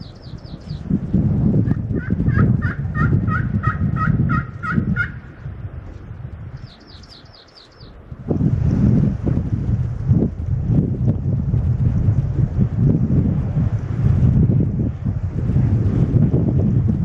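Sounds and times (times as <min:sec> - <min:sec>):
small bird trilling: 0:00.0 - 0:00.9, 0:06.6 - 0:07.9
wind rumble on microphone: 0:00.0 - 0:17.0
turkey yelping: 0:02.0 - 0:05.2.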